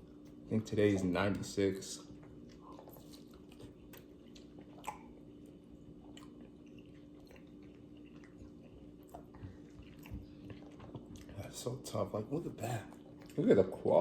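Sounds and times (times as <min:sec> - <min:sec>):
faint steady hum: 0:00.0 - 0:14.0
person chewing food: 0:02.0 - 0:11.8, 0:12.5 - 0:13.8.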